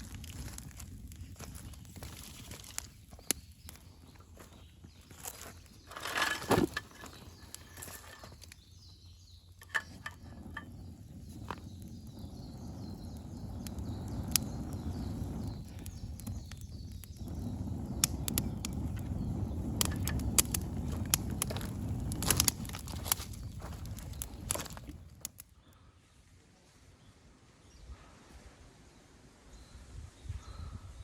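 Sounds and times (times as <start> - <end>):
campfire wood crackling and popping: 0.0 - 25.8.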